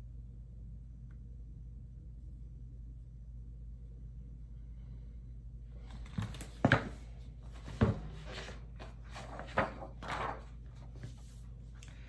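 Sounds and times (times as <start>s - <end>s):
sharp knocks of book handling: 5.9s - 10.4s
book pages rustling: 5.9s - 11.8s.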